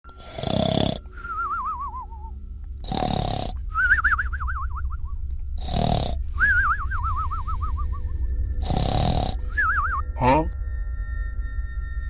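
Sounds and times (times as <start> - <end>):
cartoon snoring: 0.1 - 1.1, 2.8 - 3.6, 5.6 - 6.3, 8.6 - 9.6
falling wobbling whistle: 6.4 - 8.2.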